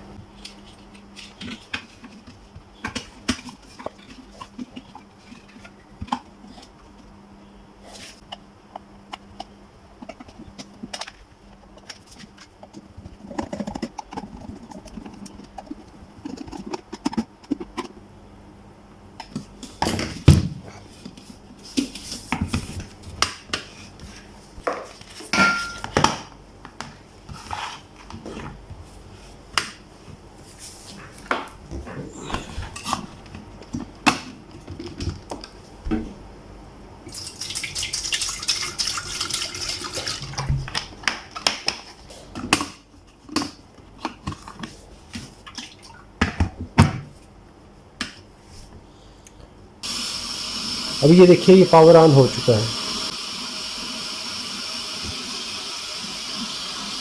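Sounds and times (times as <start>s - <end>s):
water running from a tap: 37.2s - 40.3s, 49.8s - 57.0s.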